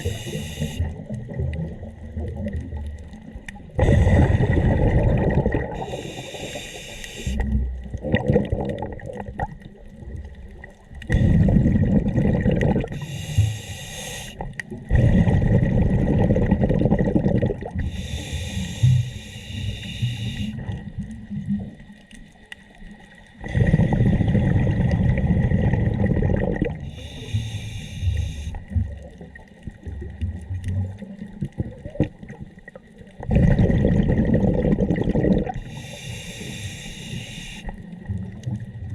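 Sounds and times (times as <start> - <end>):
regulator hissing inhale: 0.0 - 0.9, 5.8 - 7.4, 12.9 - 14.5, 17.8 - 20.8, 26.8 - 28.7, 35.6 - 38.0
exhaled bubbles rumbling: 0.0 - 13.1, 14.4 - 18.2, 20.5 - 22.1, 22.7 - 27.4, 28.1 - 35.8, 37.8 - 38.9.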